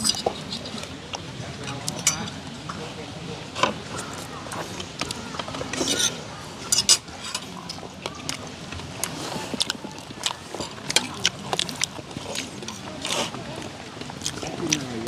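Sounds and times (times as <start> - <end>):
cutlery and dishes clinking: 1.6 - 2.3, 5.7 - 7.8.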